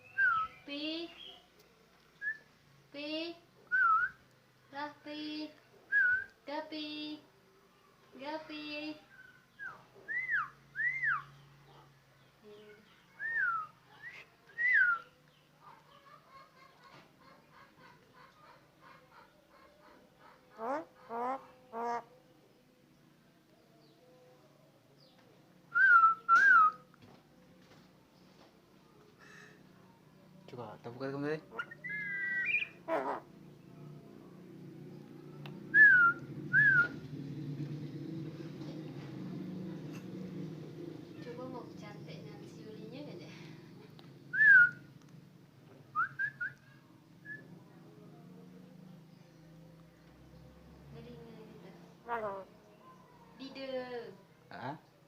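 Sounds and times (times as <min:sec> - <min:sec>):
bird whistling: 0:00.0 - 0:01.3, 0:09.5 - 0:11.3, 0:13.2 - 0:15.1, 0:31.6 - 0:32.8, 0:35.7 - 0:37.0, 0:46.0 - 0:46.6.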